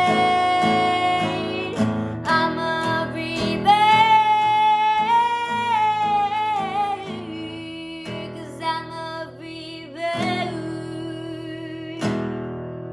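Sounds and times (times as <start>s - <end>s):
strummed acoustic string instrument: 0.0s - 7.4s.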